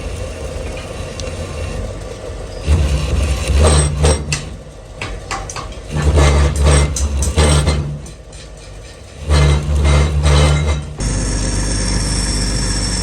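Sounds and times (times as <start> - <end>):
low motor hum: 9.2 - 13.0.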